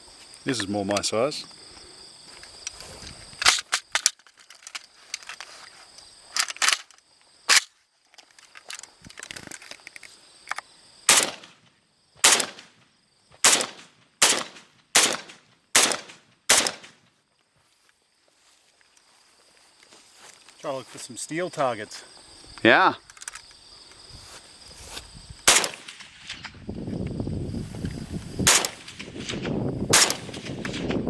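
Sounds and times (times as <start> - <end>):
gunshots: 11.1 - 11.5, 12.2 - 12.7, 13.4 - 17.0, 25.4 - 26.2, 28.4 - 31.0.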